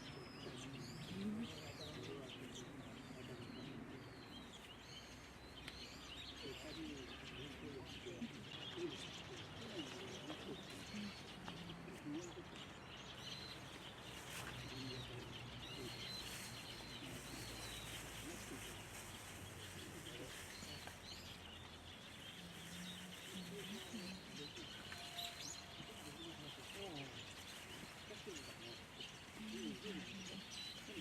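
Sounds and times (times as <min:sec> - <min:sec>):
faint bird chirps: 0:15.6 - 0:31.0.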